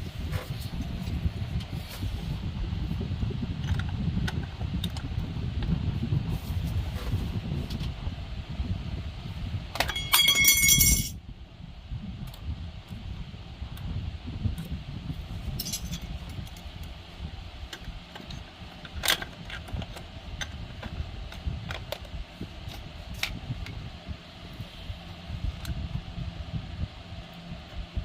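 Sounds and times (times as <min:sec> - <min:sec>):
steady low hum: 0:00.0 - 0:28.0
metal parts clicking: 0:15.6 - 0:16.1.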